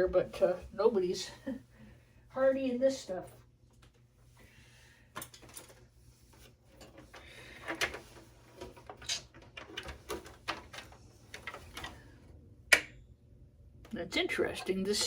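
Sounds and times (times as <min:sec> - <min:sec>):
computer parts clicking and clattering: 0:06.8 - 0:12.0.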